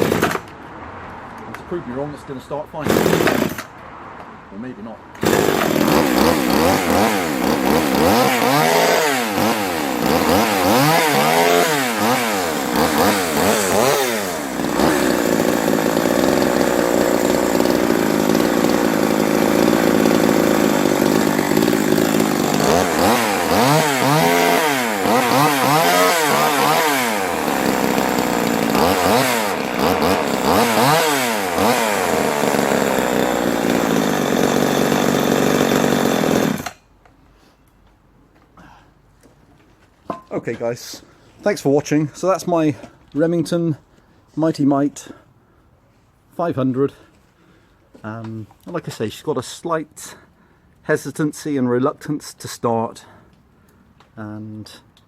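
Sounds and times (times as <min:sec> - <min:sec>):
chainsaw engine revving: 0:00.0 - 0:00.4, 0:02.8 - 0:03.7, 0:05.2 - 0:36.8.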